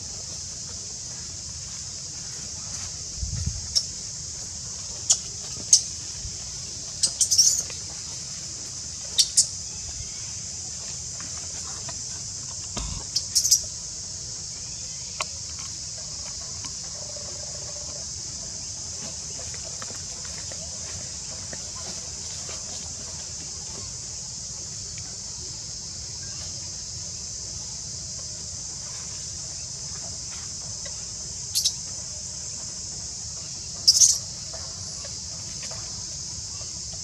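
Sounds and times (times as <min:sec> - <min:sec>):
steady high hiss: 0:00.0 - 0:18.9
baby monkey squeaking: 0:33.9 - 0:34.2.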